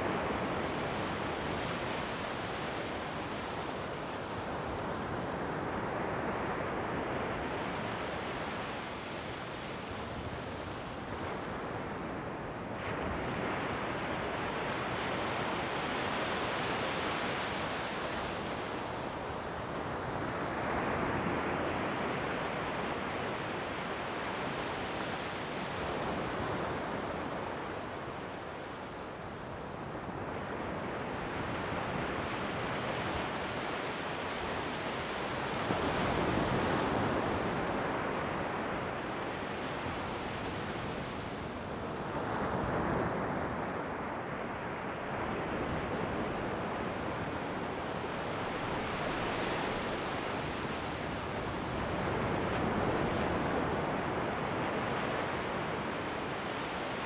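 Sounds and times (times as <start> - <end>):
ocean waves breaking on shore: 29.8 - 57.0.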